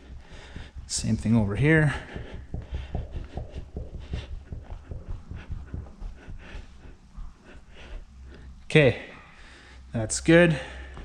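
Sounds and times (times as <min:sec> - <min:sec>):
rag rubbing painted metal: 0:00.0 - 0:07.0.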